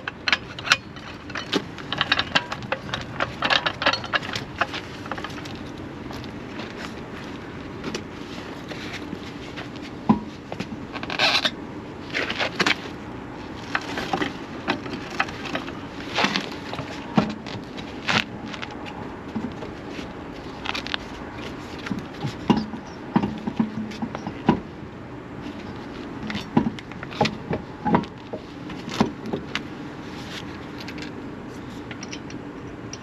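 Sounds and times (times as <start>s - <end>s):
wheels and hand tools clicking: 0.0s - 7.0s.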